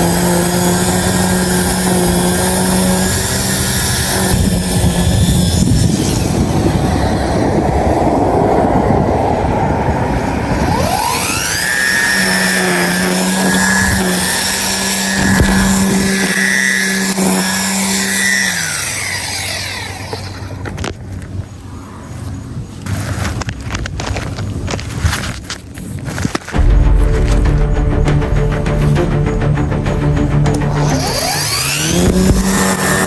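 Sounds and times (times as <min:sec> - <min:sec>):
small petrol engine revving: 0:00.0 - 0:21.2, 0:28.6 - 0:33.0.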